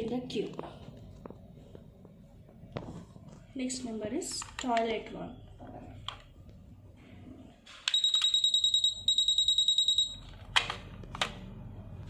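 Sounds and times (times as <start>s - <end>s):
rapid high-pitched pager beeping: 7.9s - 10.2s.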